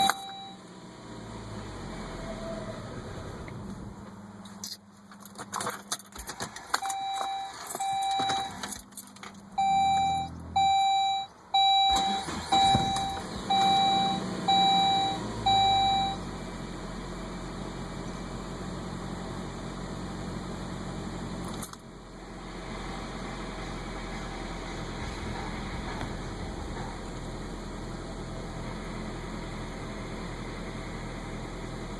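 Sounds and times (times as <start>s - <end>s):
car warning chime beeping: 0.0s - 0.7s, 6.8s - 8.8s, 9.6s - 16.2s
car engine idling: 0.0s - 31.9s.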